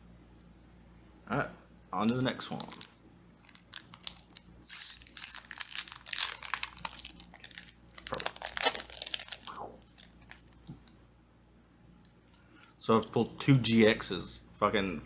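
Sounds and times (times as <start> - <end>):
foil wrapper tearing and crinkling: 2.0 - 10.6.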